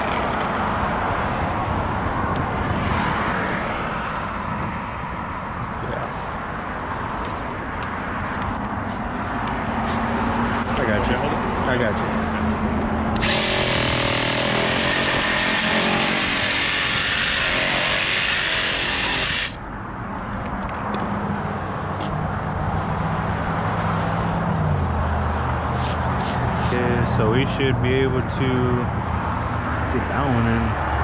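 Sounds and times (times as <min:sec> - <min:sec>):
power saw cutting plastic pipe: 0:13.2 - 0:19.6, 0:25.7 - 0:26.9.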